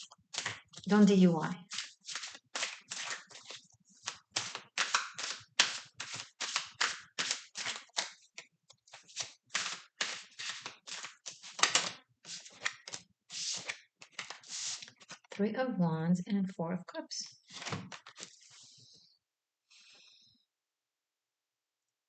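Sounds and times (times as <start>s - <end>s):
cards being shuffled: 0.0s - 0.9s, 1.7s - 15.4s, 17.4s - 18.7s.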